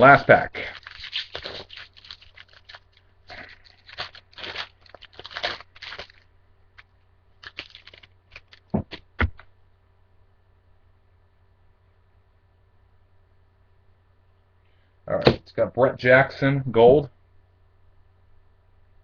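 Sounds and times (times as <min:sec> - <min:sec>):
foil wrapper tearing and crinkling: 0:00.1 - 0:09.1
cards rustling: 0:00.2 - 0:09.4.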